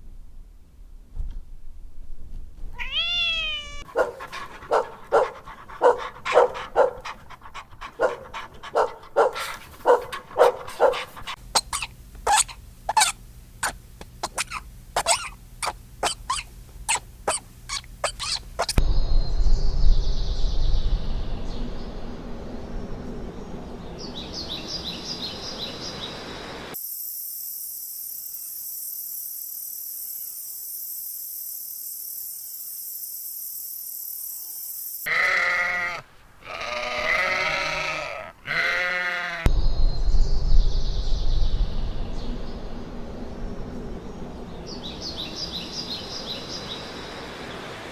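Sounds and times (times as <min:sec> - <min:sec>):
outdoor background noise: 0:00.0 - 0:47.9
sharp strokes: 0:10.7 - 0:18.8
livestock bleating: 0:35.1 - 0:39.5.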